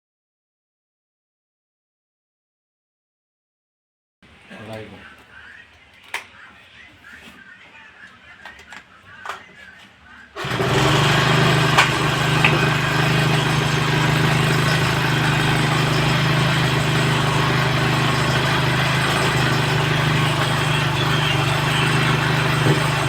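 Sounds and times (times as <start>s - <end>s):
brush cutter engine running: 10.4s - 23.0s.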